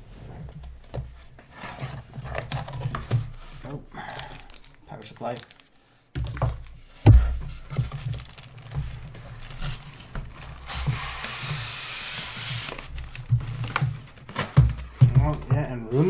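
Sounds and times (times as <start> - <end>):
cardboard box knocks and thump: 6.2 - 9.0, 13.2 - 15.7
cardboard tearing: 7.6 - 14.7.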